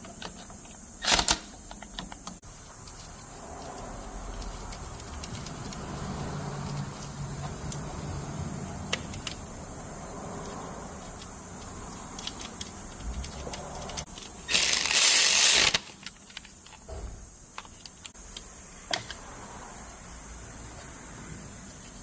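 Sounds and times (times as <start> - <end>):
loud rushing hiss: 14.5 - 15.9.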